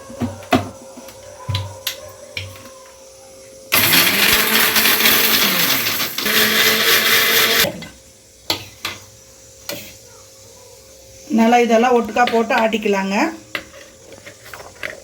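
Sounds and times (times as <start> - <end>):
mixer grinder running: 3.7 - 7.8.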